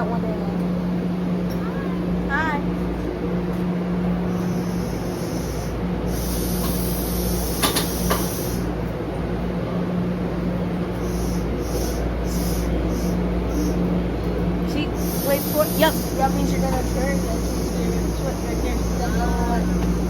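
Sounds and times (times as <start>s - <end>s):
subway train humming: 0.0s - 20.0s
air hissing: 4.3s - 8.7s, 11.0s - 13.8s, 15.0s - 20.0s.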